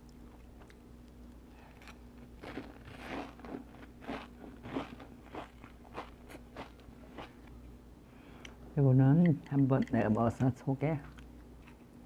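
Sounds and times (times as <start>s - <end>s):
crunching and chewing spring roll: 0.0s - 7.6s.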